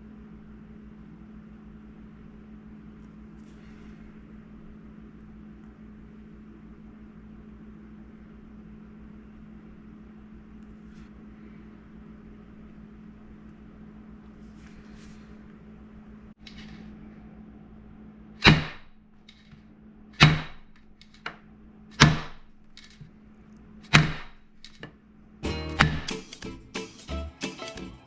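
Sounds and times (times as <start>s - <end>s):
steady low hum: 0.0s - 27.0s
metal baking sheet banging: 18.4s - 18.8s, 20.2s - 20.6s, 25.4s - 27.0s.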